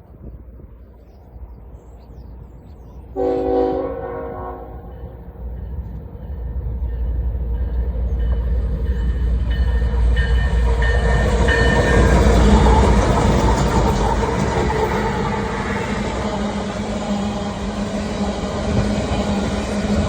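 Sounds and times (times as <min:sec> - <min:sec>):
train rumbling: 0:00.0 - 0:20.0
train horn blast: 0:03.1 - 0:05.3.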